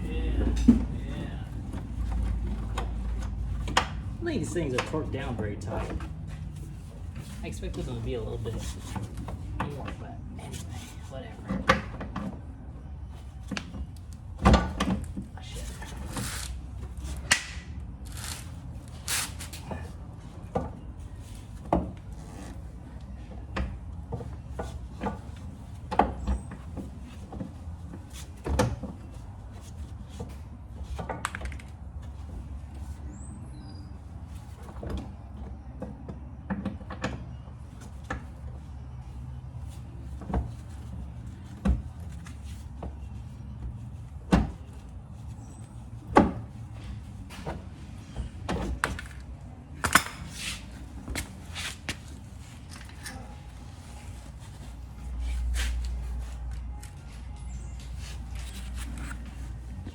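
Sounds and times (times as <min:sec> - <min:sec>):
low steady rumble: 0:00.0 - 0:05.6.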